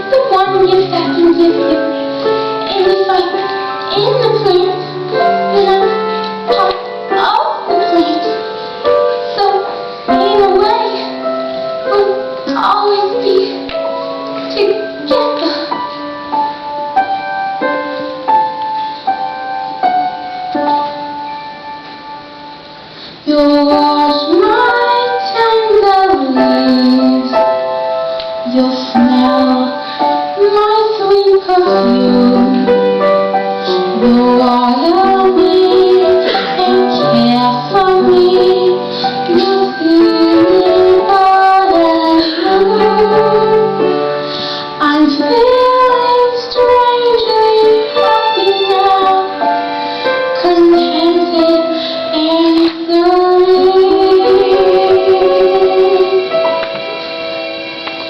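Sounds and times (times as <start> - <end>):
soft keyboard chords: 0.0 - 58.0
woman singing a slow ballad: 23.3 - 27.4, 28.4 - 32.7, 33.7 - 43.6, 44.8 - 49.4, 50.4 - 56.4.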